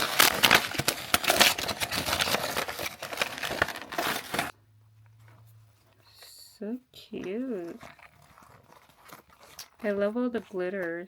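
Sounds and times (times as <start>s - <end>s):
plastic packaging crinkling: 0.0s - 4.5s, 7.3s - 11.0s.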